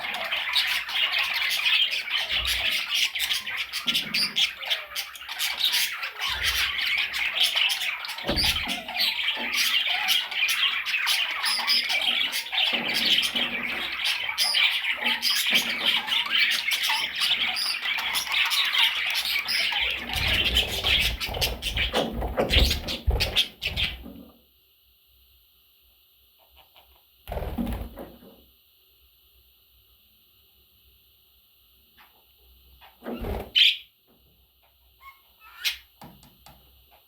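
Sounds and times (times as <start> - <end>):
budgerigars chirping and squawking: 0.0 - 24.2, 32.8 - 33.9, 34.6 - 36.0.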